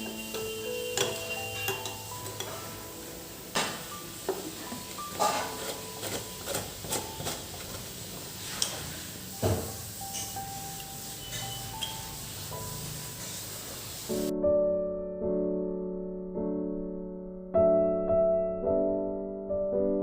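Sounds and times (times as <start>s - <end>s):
containers and utensils clinking: 0.0s - 2.9s, 3.5s - 12.2s.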